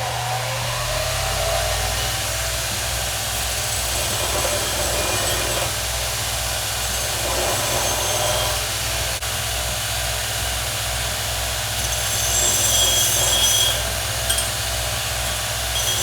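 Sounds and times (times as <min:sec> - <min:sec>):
power tool whirring: 0:00.0 - 0:09.2, 0:11.4 - 0:16.0.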